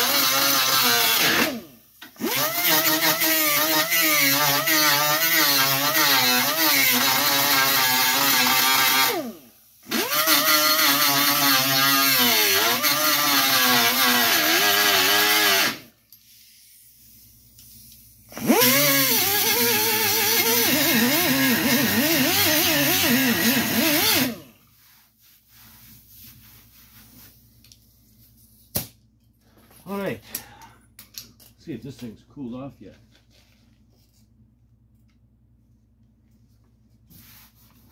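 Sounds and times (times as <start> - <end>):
grinder cutting metal: 0.0 - 15.9, 18.3 - 24.5.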